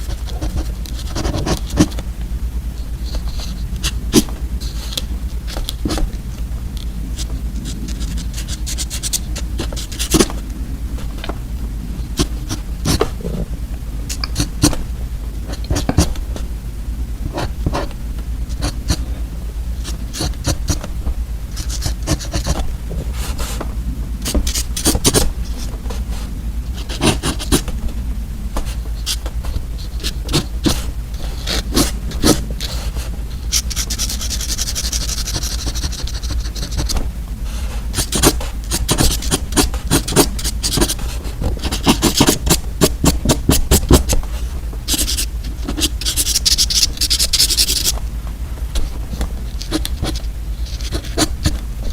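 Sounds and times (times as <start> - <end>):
pen scraping strokes: 0.0 - 2.0, 3.0 - 6.2, 7.2 - 10.4, 12.2 - 13.2, 14.1 - 14.8, 15.5 - 16.2, 19.8 - 20.9, 21.5 - 27.7, 28.6 - 48.0, 49.5 - 51.9
pen scratching on paper: 0.0 - 2.0, 3.0 - 6.2, 7.2 - 10.4, 12.2 - 13.5, 14.1 - 14.9, 15.5 - 16.4, 17.2 - 19.2, 19.8 - 20.9, 21.5 - 27.7, 28.6 - 48.0, 49.5 - 51.9.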